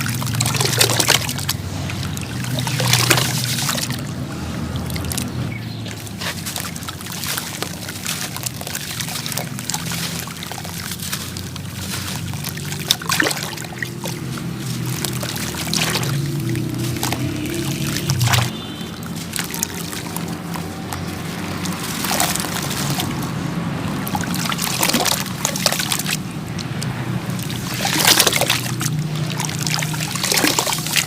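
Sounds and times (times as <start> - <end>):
wet cement crumbling in water: 0.0 - 31.0.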